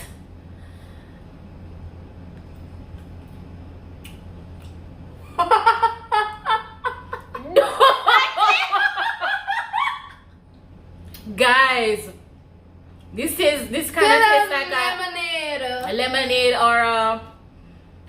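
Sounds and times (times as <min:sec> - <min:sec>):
low room hum: 0:00.0 - 0:18.0
person laughing: 0:05.2 - 0:10.3.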